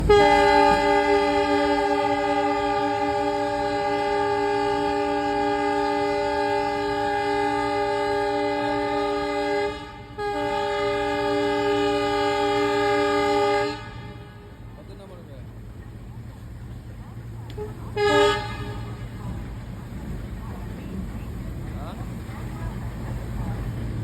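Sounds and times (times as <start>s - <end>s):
train horn chord: 0.0s - 14.7s, 17.5s - 19.2s.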